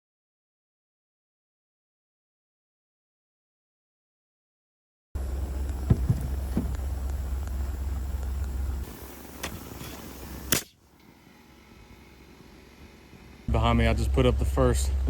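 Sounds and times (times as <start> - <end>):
steady low rumble: 5.2 - 10.5.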